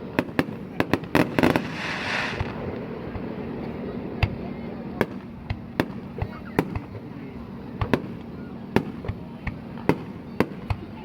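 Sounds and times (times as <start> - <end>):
fireworks bangs: 0.2 - 3.4
brief hiss: 1.2 - 2.8.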